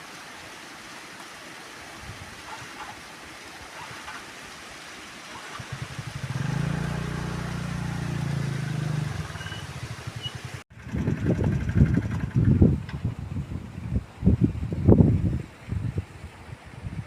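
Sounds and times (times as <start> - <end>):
vehicle engine running: 5.5 - 12.9
low rumbling: 5.6 - 16.0.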